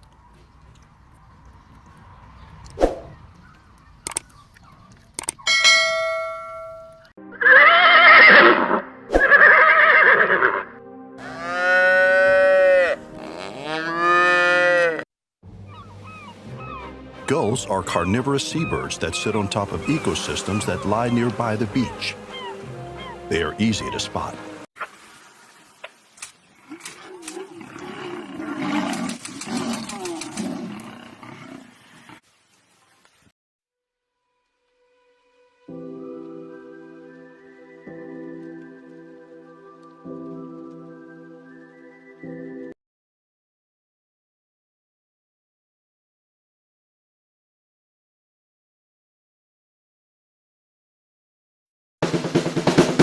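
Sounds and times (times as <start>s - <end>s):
ringing tone: 5.5s - 7.1s
farm animal calling: 7.3s - 15.0s, 15.6s - 24.4s
large animal roaring: 26.6s - 32.2s.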